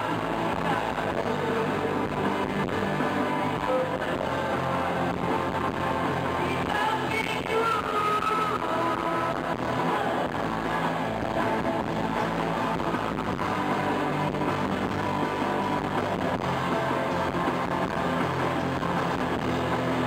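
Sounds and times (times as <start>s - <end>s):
electric guitar: 0.0s - 20.0s
live rock band playing: 0.0s - 20.0s.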